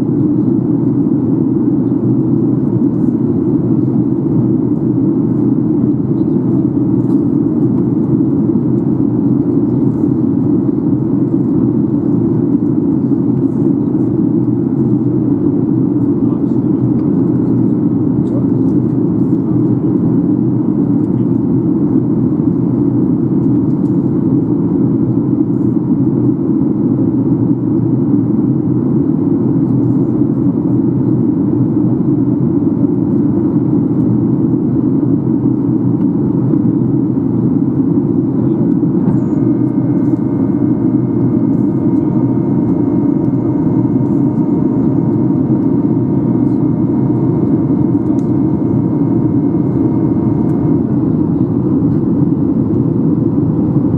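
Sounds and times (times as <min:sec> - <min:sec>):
aircraft engines rumbling: 0:00.0 - 0:53.9
steady whining tones: 0:36.0 - 0:53.9.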